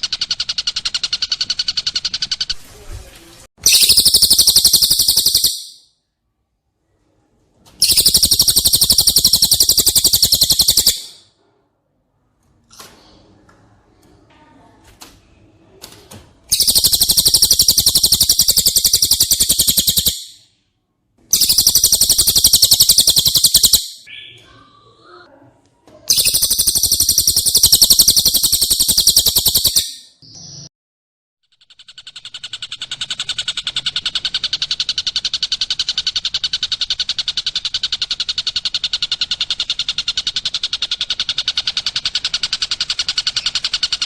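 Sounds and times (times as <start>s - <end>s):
songbird rapid high trills: 3.7s - 5.8s, 7.8s - 11.2s, 16.5s - 20.3s, 21.4s - 24.0s, 26.1s - 30.1s.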